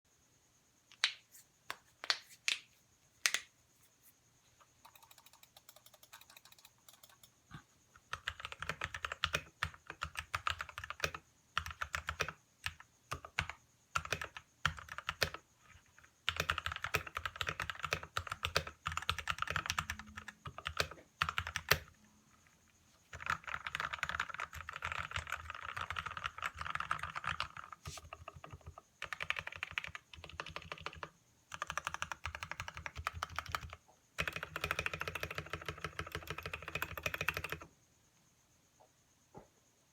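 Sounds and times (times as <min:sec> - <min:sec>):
mechanical keyboard typing: 0:04.8 - 0:07.4, 0:08.1 - 0:22.0, 0:23.1 - 0:37.6.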